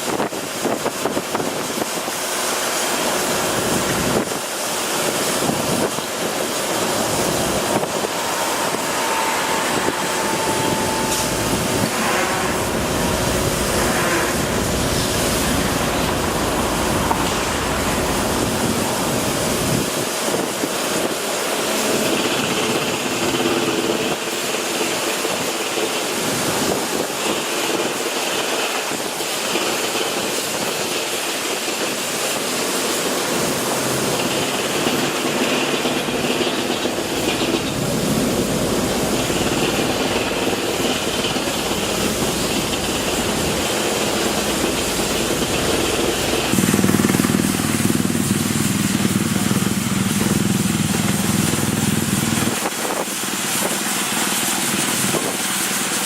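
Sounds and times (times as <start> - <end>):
loud machinery noise: 0.0 - 56.0
faint hums shifting pitch: 6.5 - 19.9.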